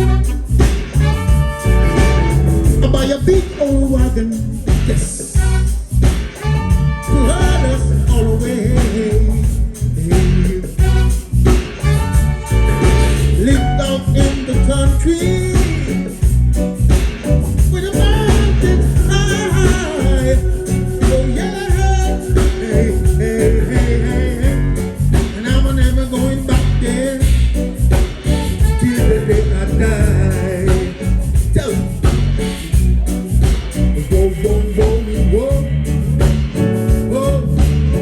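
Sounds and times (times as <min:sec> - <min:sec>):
wavering lead melody: 0:00.0 - 0:03.3, 0:11.9 - 0:34.4
heavy bass: 0:00.0 - 0:38.0
live reggae band playing: 0:00.0 - 0:38.0
steady drums: 0:00.0 - 0:38.0.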